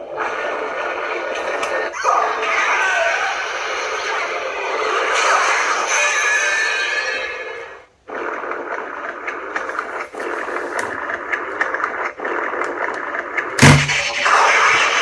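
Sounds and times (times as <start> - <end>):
loud hit: 13.6 - 14.2.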